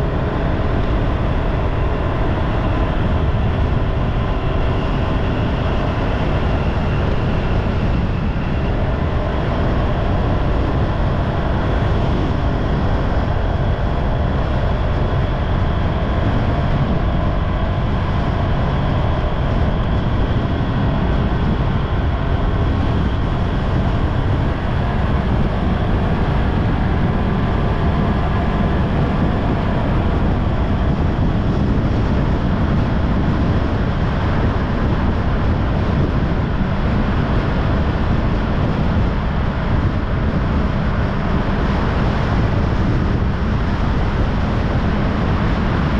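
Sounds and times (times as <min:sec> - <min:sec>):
vehicle engine and tyre rumble: 0:00.0 - 0:45.9.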